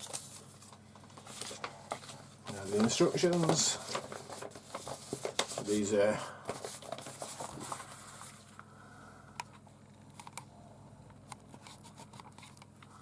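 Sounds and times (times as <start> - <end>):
light clicks of paper booklet: 0.0 - 5.8
paper rustling: 0.0 - 8.6, 11.4 - 12.8.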